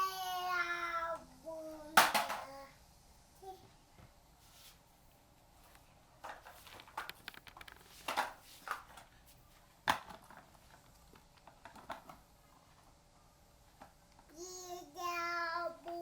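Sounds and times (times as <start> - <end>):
small objects clicking and knocking: 6.2 - 9.0.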